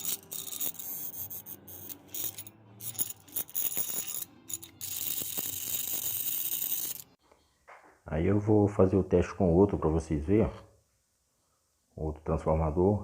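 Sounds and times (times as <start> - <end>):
metal tools clicking and rattling: 0.0 - 7.2.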